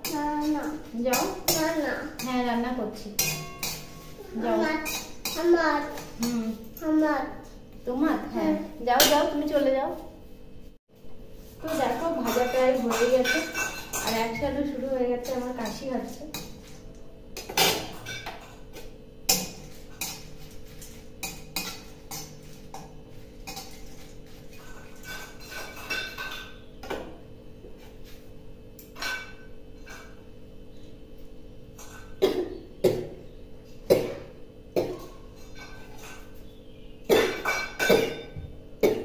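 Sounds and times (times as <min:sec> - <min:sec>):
person coughing: 0:32.2 - 0:33.0.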